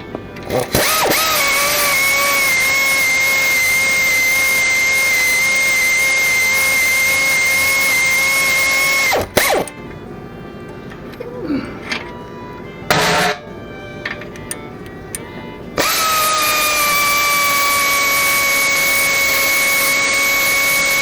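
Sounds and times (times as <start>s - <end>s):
power drill whining: 0.0s - 21.0s.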